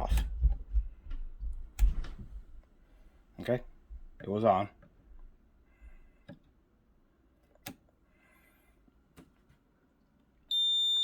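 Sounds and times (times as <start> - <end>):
high-pitched alarm buzzer beep: 10.5 - 11.0.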